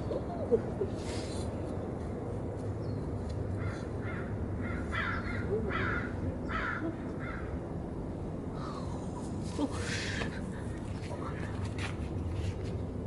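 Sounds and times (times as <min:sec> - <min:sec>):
low background rumble: 0:00.0 - 0:13.0
crow cawing: 0:03.6 - 0:07.5.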